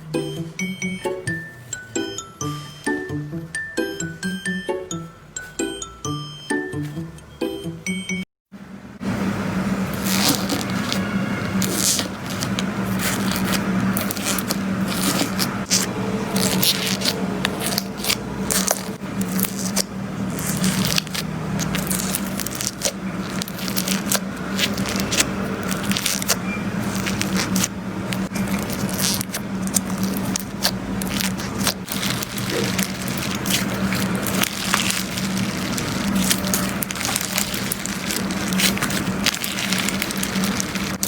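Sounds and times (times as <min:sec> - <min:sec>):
slime squeezed by hand: 0:09.9 - 0:41.0.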